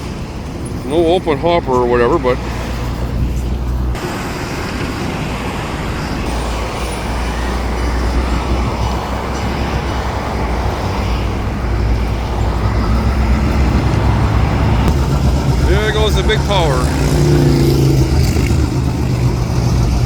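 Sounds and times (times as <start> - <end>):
diesel locomotives rumbling: 0.0 - 20.0
road traffic noise: 0.0 - 20.0.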